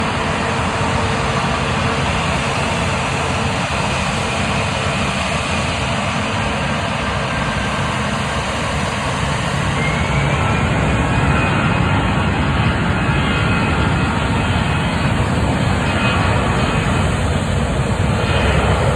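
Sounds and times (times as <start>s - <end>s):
jet engines running: 0.0s - 18.9s.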